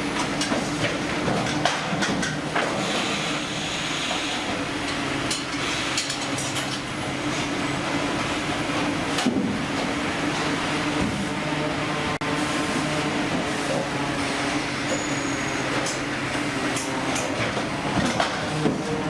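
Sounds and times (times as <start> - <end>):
heavy machinery humming: 0.0 - 19.0
clanks and knocks: 0.2 - 2.7, 16.7 - 19.0.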